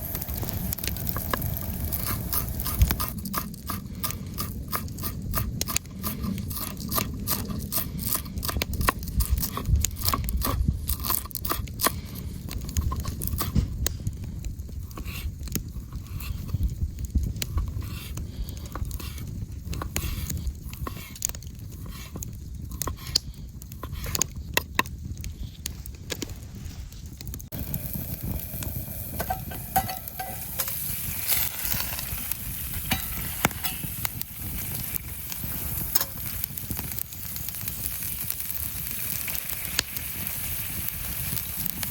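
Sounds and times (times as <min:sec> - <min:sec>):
campfire crackling: 0:00.0 - 0:41.9
scraping: 0:28.5 - 0:37.1.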